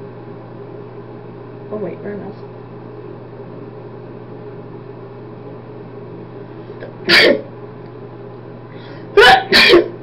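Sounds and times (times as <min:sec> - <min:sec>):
steady low hum: 0:00.0 - 0:10.0
man sneezing: 0:06.9 - 0:07.5, 0:09.1 - 0:10.0.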